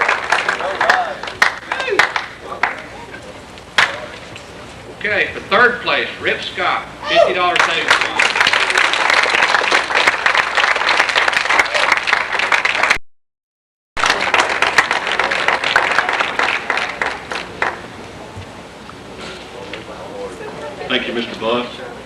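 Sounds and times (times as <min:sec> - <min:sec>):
audience applauding: 0:00.0 - 0:02.9, 0:07.5 - 0:13.0, 0:14.0 - 0:17.9.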